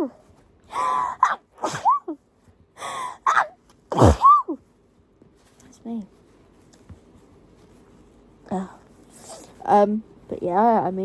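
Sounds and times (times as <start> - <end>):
person sneezing: 1.0 - 2.2, 3.2 - 4.6.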